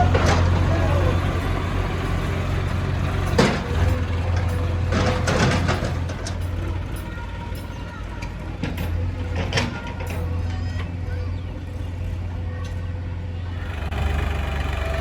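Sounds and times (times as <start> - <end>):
short knocks and rattles: 0.0 - 10.5
diesel engine running: 0.0 - 15.0.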